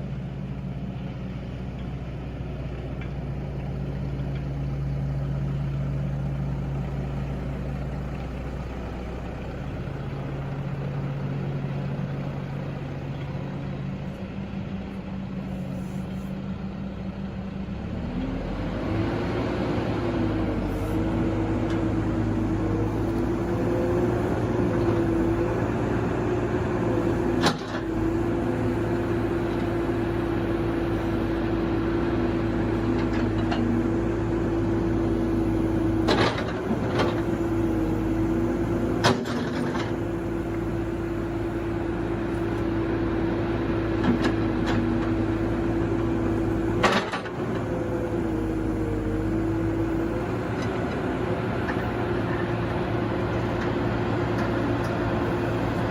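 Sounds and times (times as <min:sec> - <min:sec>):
excavator engine humming: 0:00.0 - 0:55.9.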